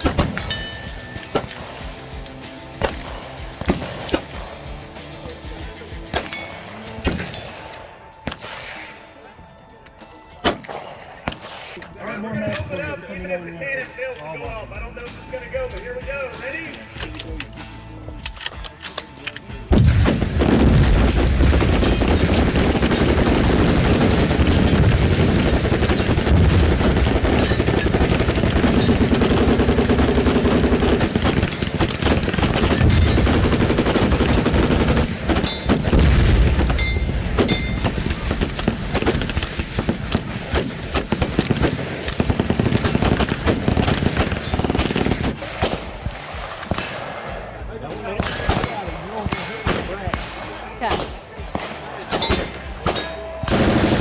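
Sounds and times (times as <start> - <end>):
rapid automatic gunfire: 19.7 - 46.0, 53.5 - 54.0.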